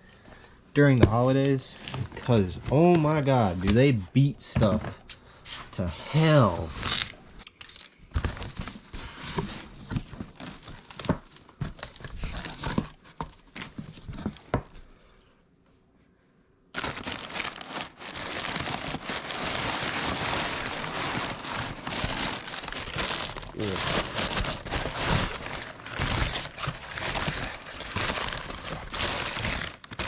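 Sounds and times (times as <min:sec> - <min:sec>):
packing material crinkling: 0:01.4 - 0:03.9, 0:16.7 - 0:30.0.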